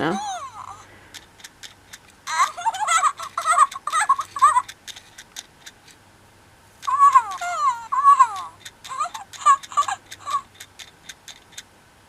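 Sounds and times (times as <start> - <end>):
toy chirping and babbling: 0.0 - 0.9, 1.9 - 5.2, 6.8 - 11.6
light evenly spaced clicks: 0.4 - 6.0, 6.8 - 11.7.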